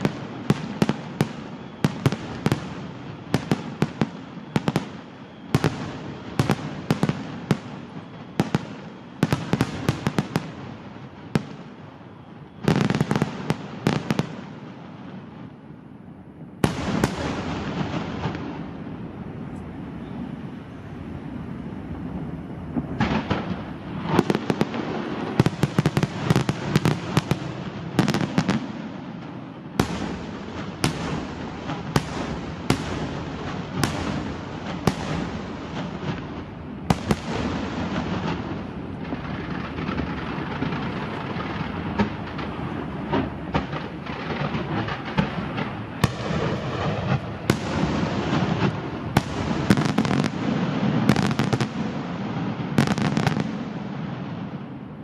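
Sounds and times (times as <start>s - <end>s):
fireworks bursting with sharp bangs: 0.0s - 55.0s
continuous rumble: 15.6s - 27.8s, 28.6s - 49.7s.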